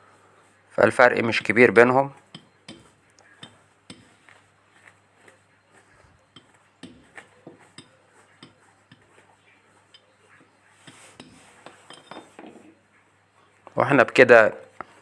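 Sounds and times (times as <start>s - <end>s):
faint metallic clicks and taps: 2.2s - 5.4s, 6.3s - 9.2s.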